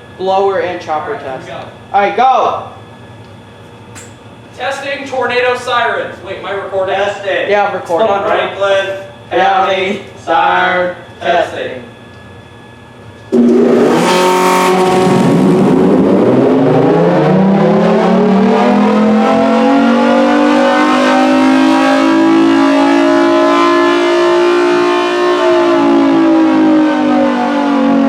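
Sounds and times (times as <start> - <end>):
warning siren wailing: 13.3 - 28.0.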